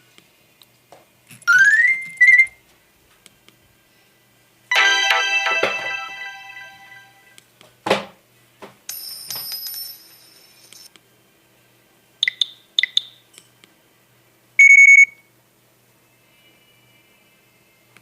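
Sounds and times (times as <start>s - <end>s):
mobile phone electronic beeps: 14.6s - 15.3s.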